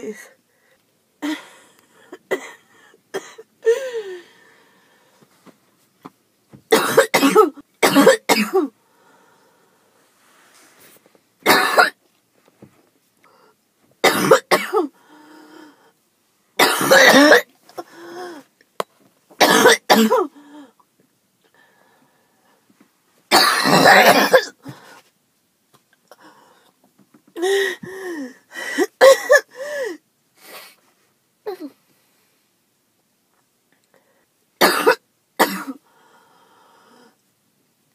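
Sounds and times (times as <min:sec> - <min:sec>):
woman coughing harshly: 0:01.2 - 0:04.0, 0:06.7 - 0:08.7, 0:11.4 - 0:12.0, 0:14.0 - 0:15.0, 0:16.6 - 0:17.9, 0:19.4 - 0:20.4, 0:23.3 - 0:24.8, 0:28.8 - 0:29.7, 0:34.6 - 0:35.8
short breaths: 0:08.8 - 0:11.0, 0:29.5 - 0:30.9, 0:35.8 - 0:37.2.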